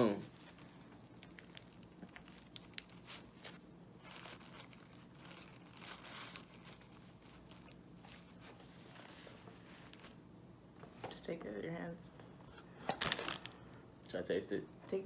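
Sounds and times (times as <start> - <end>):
packaging rustling: 0.3 - 10.2, 12.7 - 13.8.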